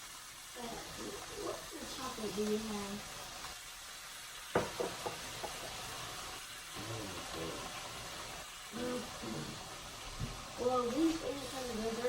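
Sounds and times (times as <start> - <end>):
food sizzling in a frying pan: 0.0 - 12.0
sharp knocks: 4.6 - 5.5.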